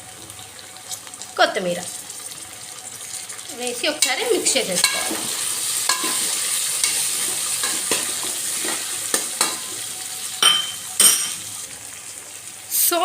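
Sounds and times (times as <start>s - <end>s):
food sizzling in hot oil: 0.0s - 13.0s
spatula scraping a pan: 4.0s - 9.7s.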